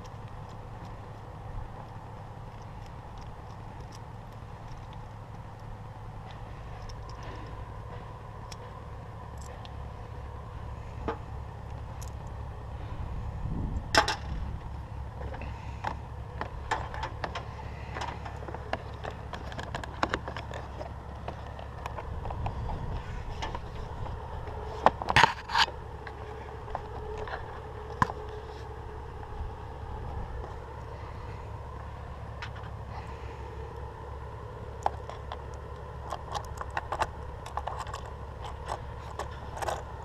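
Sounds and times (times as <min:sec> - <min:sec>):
low rumble: 0:00.0 - 0:40.0
clicks knocks and scrapes: 0:15.2 - 0:28.7, 0:36.0 - 0:39.9.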